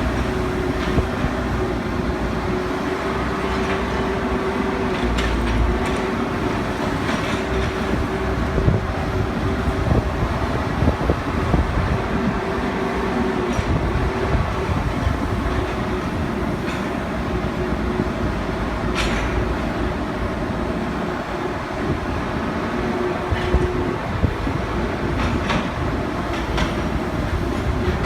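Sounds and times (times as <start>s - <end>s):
excavator diesel engine: 0.0s - 28.0s.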